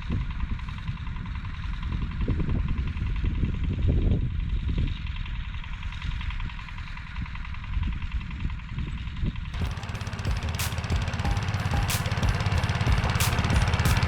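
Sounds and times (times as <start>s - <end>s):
rotary tiller cutting soil: 9.6s - 14.0s
walk-behind tractor running: 9.6s - 14.0s.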